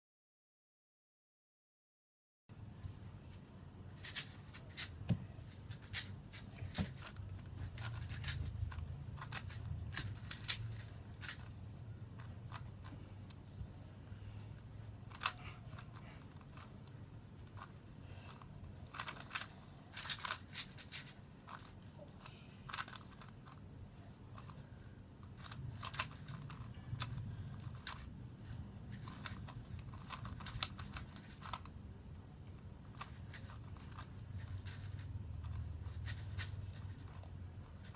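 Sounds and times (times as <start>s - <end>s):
puzzle cube clicking turns: 5.8s - 13.4s, 15.0s - 17.7s, 18.3s - 21.8s, 22.7s - 23.6s, 25.2s - 28.1s, 28.9s - 31.8s.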